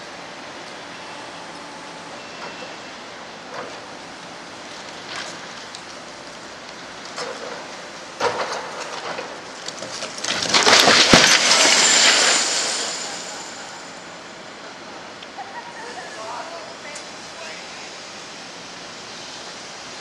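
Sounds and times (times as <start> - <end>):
debris cracking and crumbling: 8.2 - 13.9
crash of falling material: 8.2 - 14.1.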